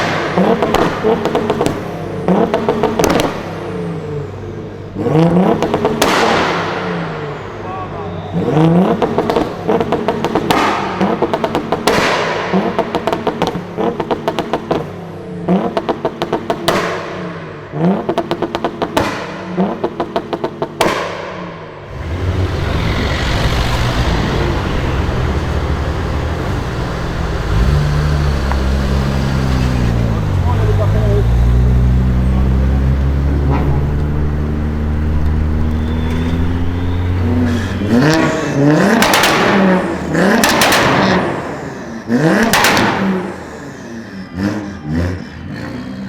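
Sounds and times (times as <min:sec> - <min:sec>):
exhaust pops and bangs: 0:00.0 - 0:03.6, 0:05.4 - 0:07.0, 0:08.9 - 0:15.0, 0:15.6 - 0:31.3, 0:33.4 - 0:41.7, 0:42.4 - 0:43.4
car engine revving: 0:00.0 - 0:07.6, 0:08.2 - 0:46.0
low engine rumble: 0:21.8 - 0:38.4.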